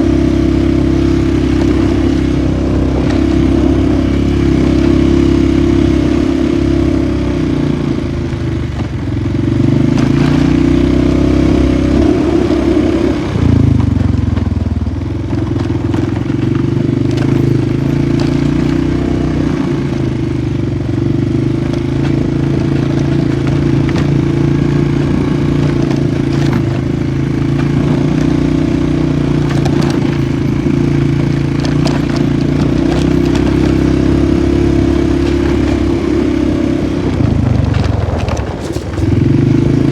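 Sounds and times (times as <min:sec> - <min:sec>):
quad bike engine running: 0:00.0 - 0:39.9.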